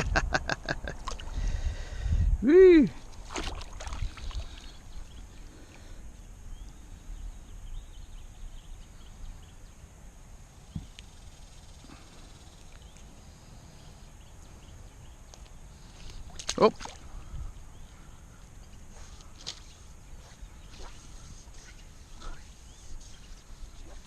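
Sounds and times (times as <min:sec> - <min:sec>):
low river rumble: 0:00.0 - 0:06.1.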